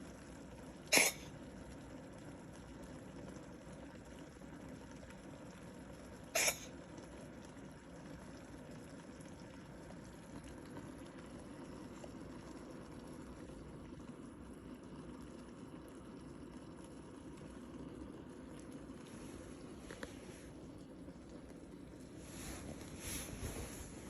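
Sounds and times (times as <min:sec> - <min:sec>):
low steady hiss: 0:00.0 - 0:24.0
cat coughing: 0:00.9 - 0:01.3, 0:06.3 - 0:06.7.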